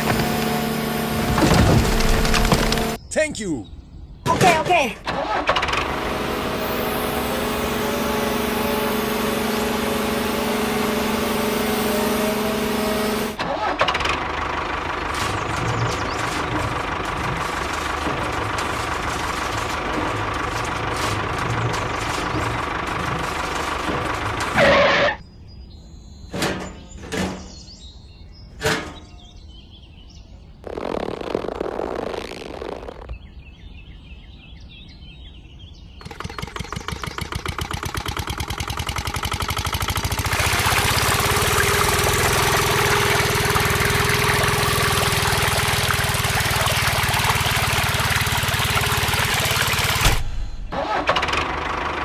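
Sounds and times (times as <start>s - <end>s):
motor humming: 0.0s - 3.0s, 5.8s - 13.4s, 14.2s - 25.2s, 36.0s - 51.3s.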